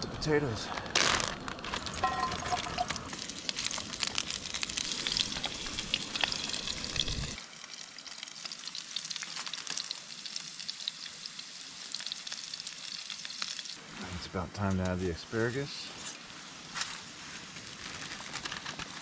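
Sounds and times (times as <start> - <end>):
potatoes sizzling in a pan: 2.0 - 14.0, 14.9 - 17.8.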